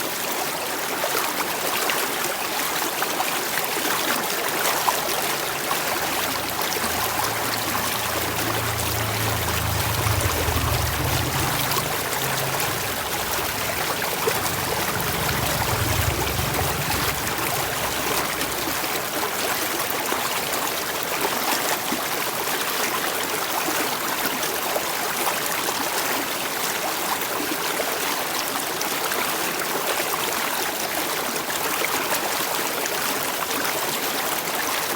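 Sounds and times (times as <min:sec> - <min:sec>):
running water flowing: 0:03.4 - 0:20.5
low rumble: 0:04.6 - 0:19.8.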